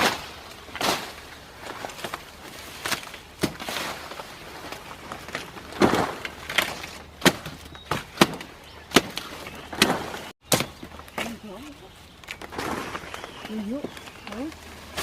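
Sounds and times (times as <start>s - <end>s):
wood cracking and knocking: 0.0s - 11.4s
brush rustling: 0.0s - 15.0s.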